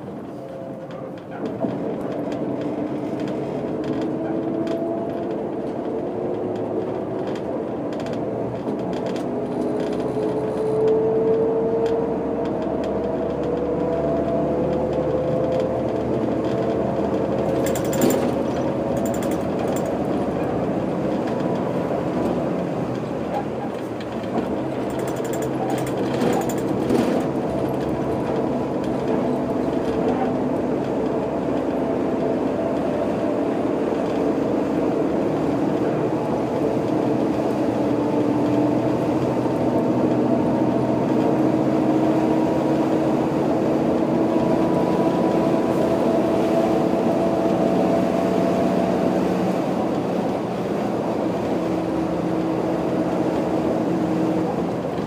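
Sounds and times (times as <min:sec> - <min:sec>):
bus diesel engine: 0:00.0 - 0:55.0
road and rolling noise: 0:00.0 - 0:55.0
short clicks or rattles: 0:17.4 - 0:20.2, 0:24.0 - 0:27.8.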